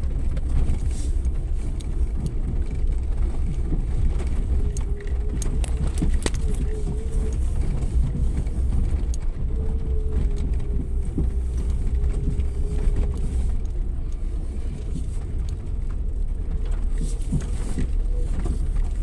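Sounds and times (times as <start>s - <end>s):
engine and drivetrain rumble: 0.0s - 19.0s.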